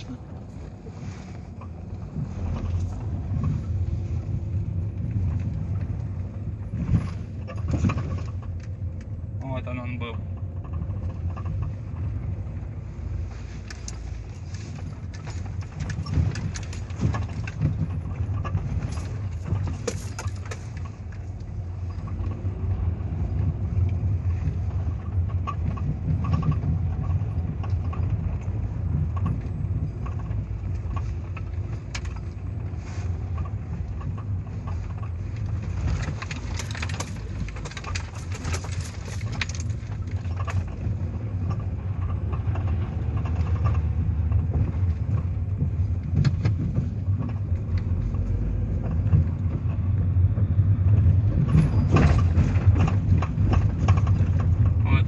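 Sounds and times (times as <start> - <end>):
tyre and road rumble: 0.0 - 55.0
loose rattling and knocking: 13.8 - 54.8.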